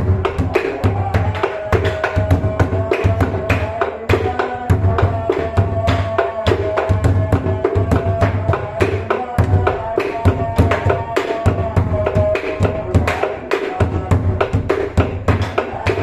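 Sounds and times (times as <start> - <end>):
sharp percussion strikes: 0.0 - 16.0.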